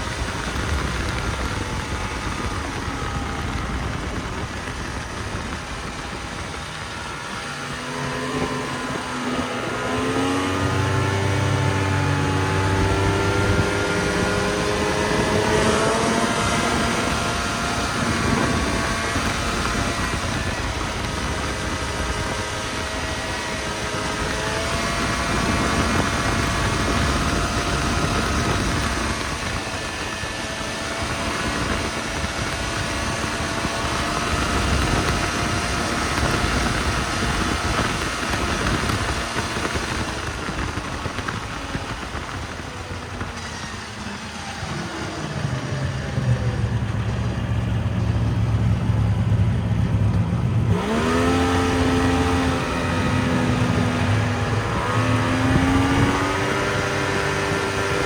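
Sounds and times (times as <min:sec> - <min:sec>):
snowmobile engine running: 0:00.0 - 0:58.0.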